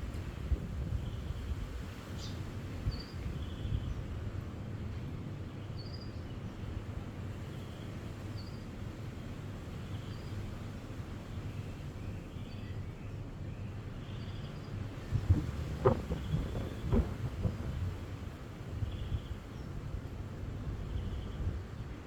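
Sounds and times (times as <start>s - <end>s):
wind buffeting: 0.0s - 4.4s, 14.8s - 22.0s.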